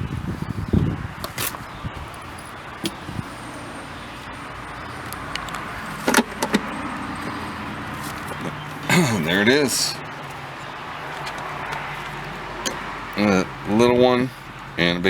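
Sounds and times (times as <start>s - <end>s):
hand tools clicking and clinking: 1.2s - 13.3s.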